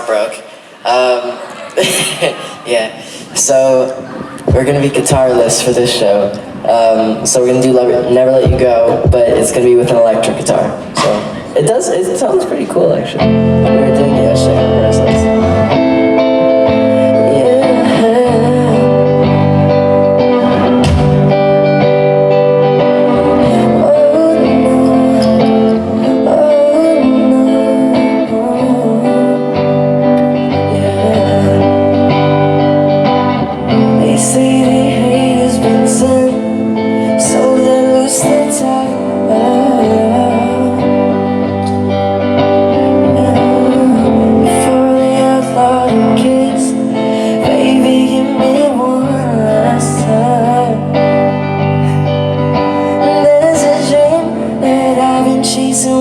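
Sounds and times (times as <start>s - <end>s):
electric guitar: 0.0s - 56.0s
live band playing pop song: 0.0s - 56.0s
bass guitar: 13.1s - 56.0s
person singing: 13.2s - 56.0s.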